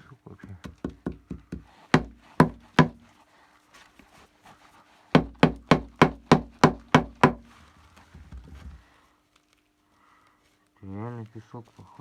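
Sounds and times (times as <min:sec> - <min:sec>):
sharp knocks: 0:00.5 - 0:03.0, 0:05.2 - 0:07.5.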